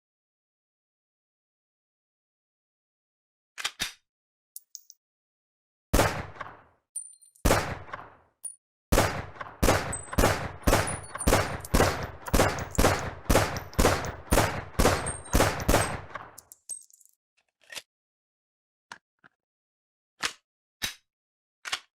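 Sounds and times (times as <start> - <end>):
pistol shots echoing: 6.0 - 6.7, 7.4 - 8.2, 8.9 - 16.4.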